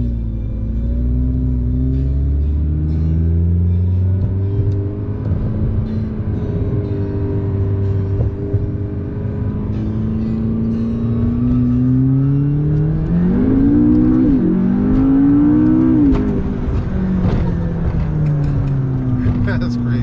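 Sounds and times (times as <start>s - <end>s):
car engine accelerating hard: 0.0s - 20.0s.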